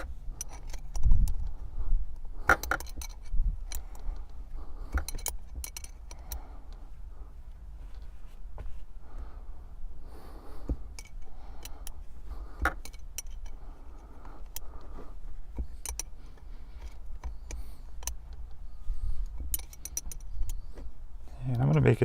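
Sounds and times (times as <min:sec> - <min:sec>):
wrench clicking on nut and bolt: 0:00.0 - 0:01.6, 0:02.4 - 0:04.1, 0:04.9 - 0:06.4, 0:15.6 - 0:16.1, 0:19.3 - 0:20.6
short rustling: 0:03.1 - 0:21.3.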